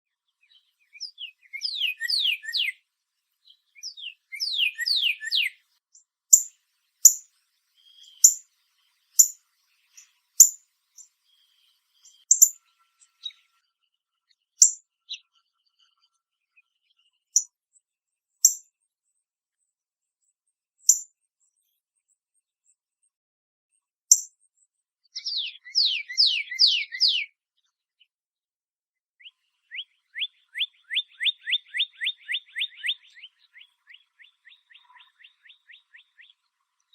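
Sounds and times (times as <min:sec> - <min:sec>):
bird slurred whistles: 0:01.6 - 0:02.7, 0:03.9 - 0:05.5, 0:25.3 - 0:27.3
bird metallic chip calls: 0:03.8 - 0:05.5, 0:06.3 - 0:07.3, 0:08.0 - 0:08.4, 0:09.2 - 0:09.4, 0:10.0 - 0:11.1, 0:12.0 - 0:12.6, 0:20.9 - 0:21.1, 0:24.1 - 0:24.4.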